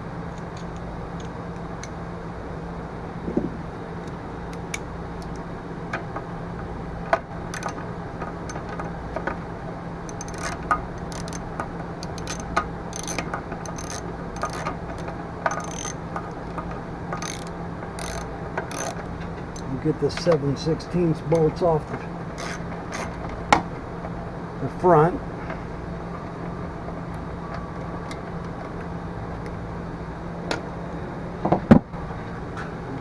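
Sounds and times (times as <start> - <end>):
ratchet wrench clicking: 7.5 - 7.8, 10.1 - 16.4, 17.1 - 19.7, 22.4 - 23.2.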